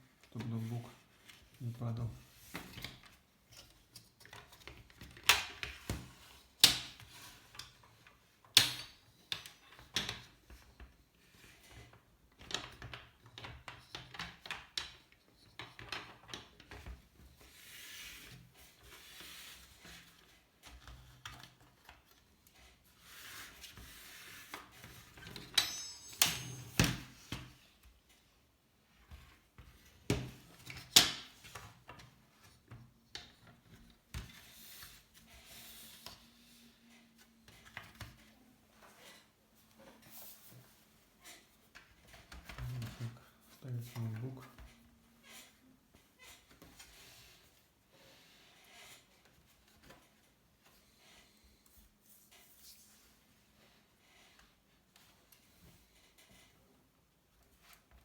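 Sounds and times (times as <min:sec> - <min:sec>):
soft rubbing and rustling: 0:31.4 - 0:56.8.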